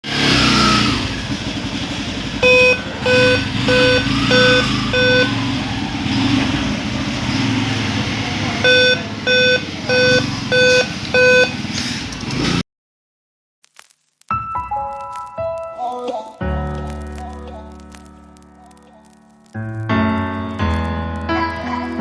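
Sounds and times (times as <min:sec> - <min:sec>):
laptop error beeps: 0:02.4 - 0:05.5, 0:08.6 - 0:11.7.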